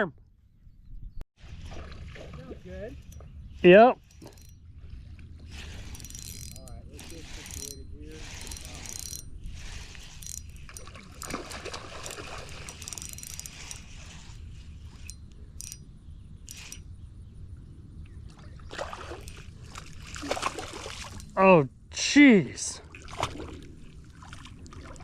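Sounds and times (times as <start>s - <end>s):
sharp splashes: 1.4s - 3.0s, 10.8s - 12.8s, 18.6s - 21.2s, 22.8s - 25.0s
water sloshing around kayak: 1.4s - 15.1s, 18.2s - 21.4s, 22.8s - 25.0s.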